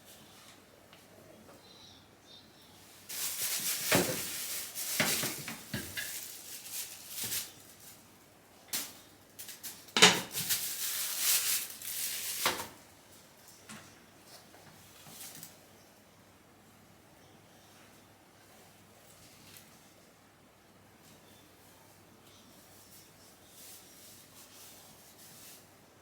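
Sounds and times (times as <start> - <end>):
laundry rustling and swishing: 2.9 - 8.2.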